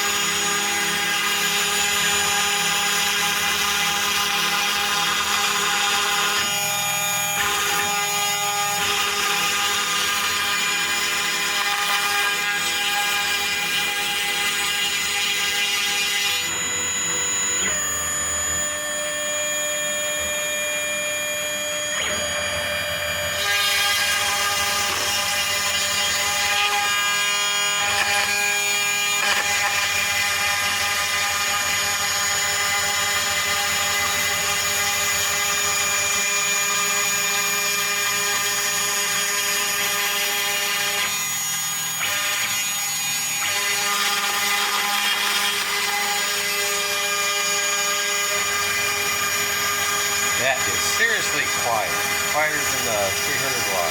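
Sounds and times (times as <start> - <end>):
spindle high whine: 16.4 - 23.4, 49.2 - 53.9
stepper motors humming: 50.2 - 53.9.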